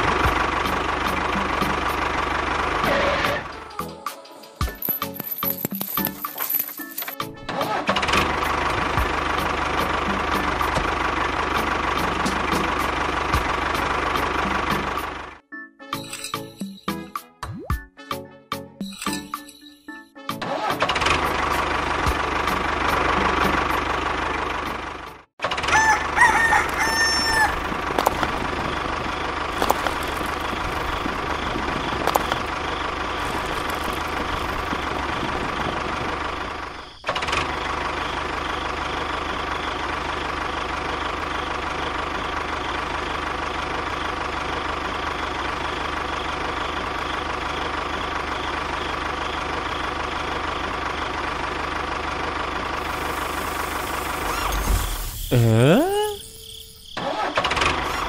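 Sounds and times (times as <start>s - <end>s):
small engine running: 4.8s - 15.4s, 20.5s - 56.3s, 57.0s - 58.0s
rooster crowing: 25.6s - 28.3s.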